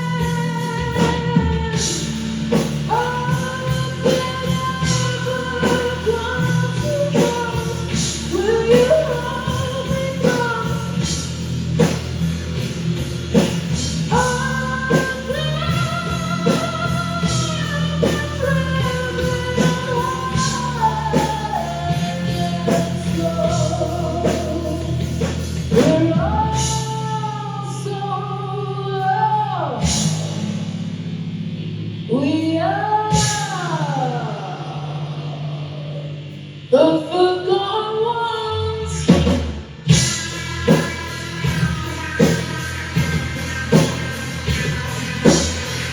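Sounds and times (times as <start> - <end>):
live rock band playing: 0.0 - 29.2, 29.8 - 37.0, 38.8 - 45.9
singer holding long notes: 32.0 - 45.9.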